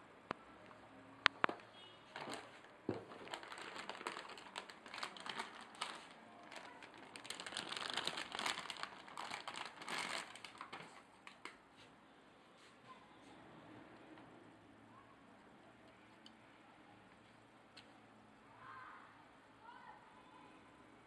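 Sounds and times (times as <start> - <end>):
packaging crinkling: 1.4 - 11.6.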